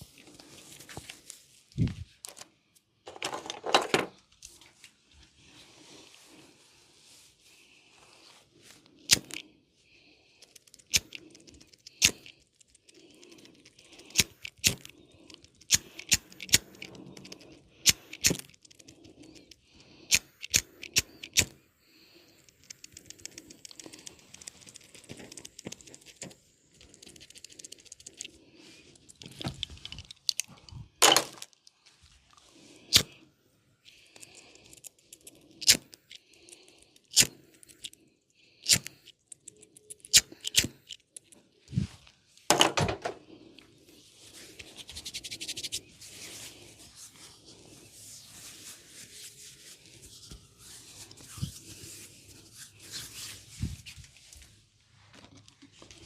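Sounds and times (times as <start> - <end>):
sharp clicks and snaps: 10.4 - 21.6, 22.4 - 28.4, 33.9 - 38.0, 38.6 - 41.4
hands rubbing oiled head: 44.1 - 53.4.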